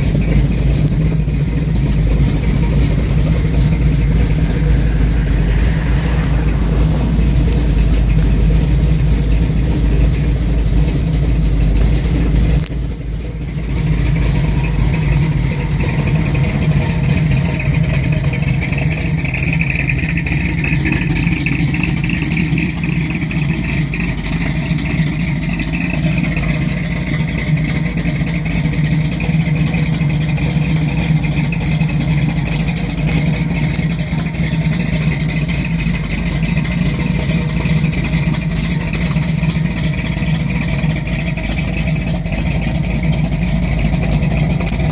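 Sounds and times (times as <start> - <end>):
car engine rough idle: 0.0 - 44.9.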